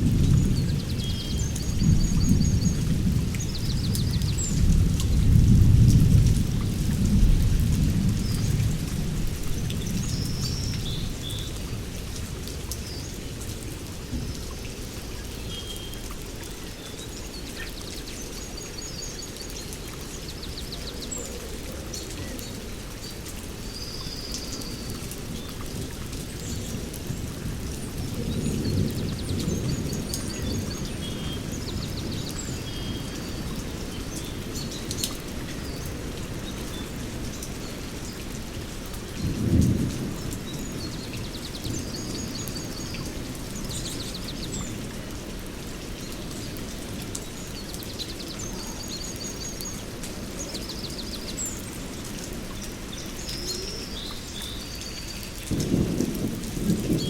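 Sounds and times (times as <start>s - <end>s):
heavy rain: 0.0s - 57.0s
rolls of thunder: 55.5s - 57.0s.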